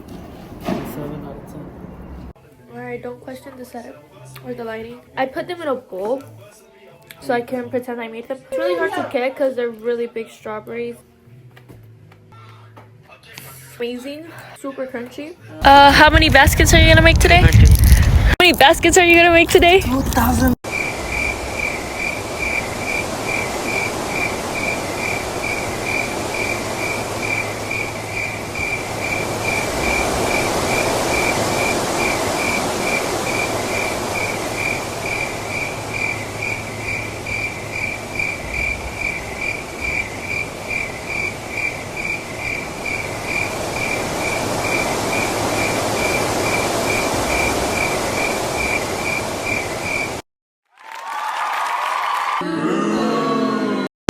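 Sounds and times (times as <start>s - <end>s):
rushing background noise: 15.6s - 50.2s
cricket chirping: 20.7s - 50.2s.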